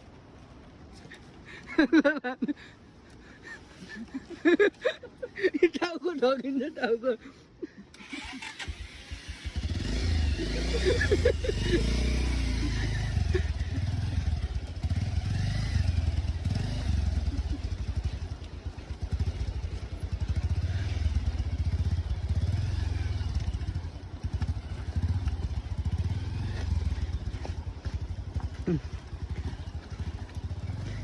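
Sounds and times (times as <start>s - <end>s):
vehicle engine rumbling: 7.9s - 31.0s.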